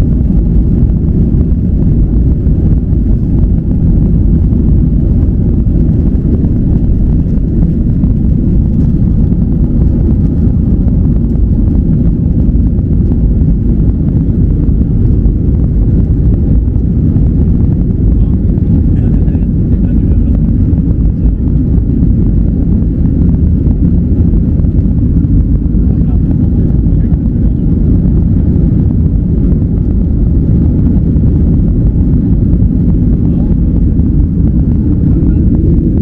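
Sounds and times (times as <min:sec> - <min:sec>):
jet engines rumbling: 0:00.0 - 0:36.0.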